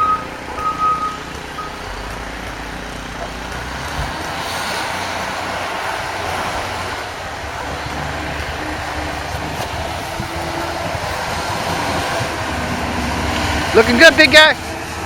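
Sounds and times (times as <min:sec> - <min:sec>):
bulldozer engine rumbling: 0:00.0 - 0:15.0.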